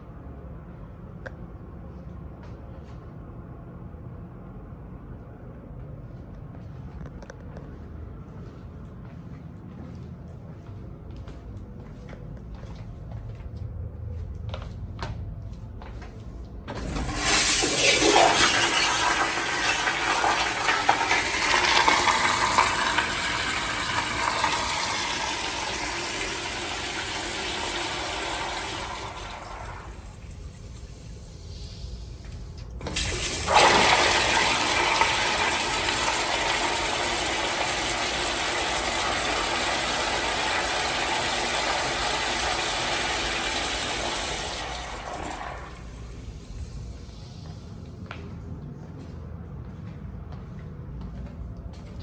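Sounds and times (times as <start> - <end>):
toilet flushing: 16.7 - 47.7.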